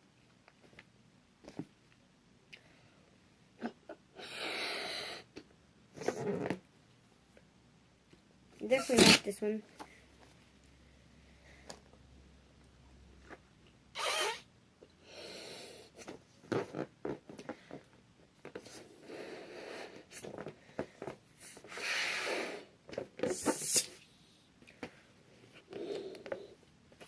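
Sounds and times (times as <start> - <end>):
balloons rustling and rubbing: 8.7 - 9.3.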